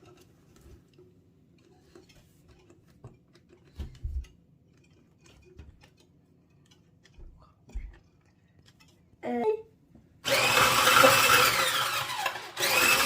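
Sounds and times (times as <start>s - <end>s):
hand mixer and bowl clicking: 10.2s - 13.0s.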